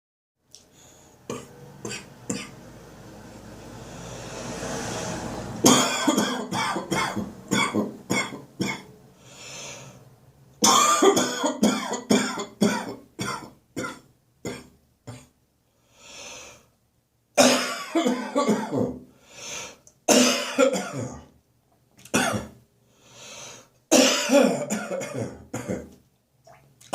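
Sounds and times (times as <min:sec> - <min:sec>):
person coughing: 0:01.3 - 0:02.5, 0:05.6 - 0:08.9, 0:10.6 - 0:15.3, 0:17.4 - 0:19.0, 0:20.1 - 0:21.3, 0:22.1 - 0:22.6, 0:23.9 - 0:26.0
person breathing in: 0:03.8 - 0:05.1, 0:09.2 - 0:10.1, 0:15.7 - 0:16.8, 0:19.1 - 0:19.8, 0:22.9 - 0:23.8.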